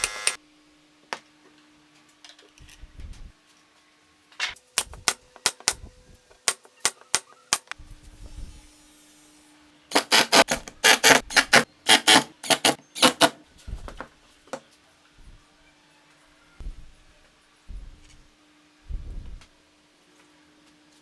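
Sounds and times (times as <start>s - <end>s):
hand tool scraping wood: 9.9s - 13.4s.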